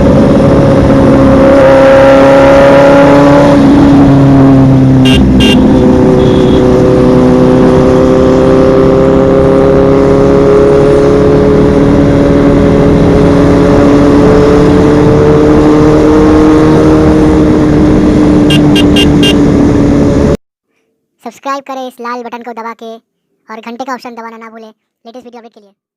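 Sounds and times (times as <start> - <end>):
motorcycle engine running: 5.0 - 8.7, 17.1 - 20.1.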